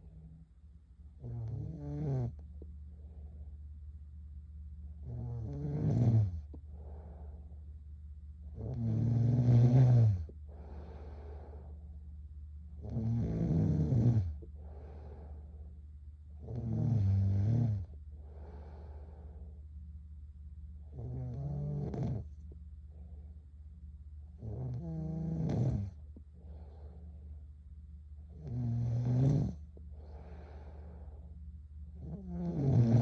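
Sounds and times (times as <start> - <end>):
girl snoring: 1.2 - 2.4, 5.1 - 6.5, 8.6 - 11.4, 12.8 - 15.2, 16.4 - 18.8, 20.9 - 22.3, 24.4 - 26.0, 28.4 - 29.6, 32.0 - 33.0.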